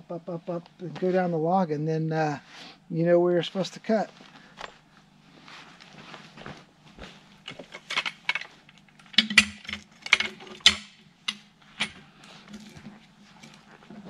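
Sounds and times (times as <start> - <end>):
metallic clicking and clanking: 7.5 - 12.0.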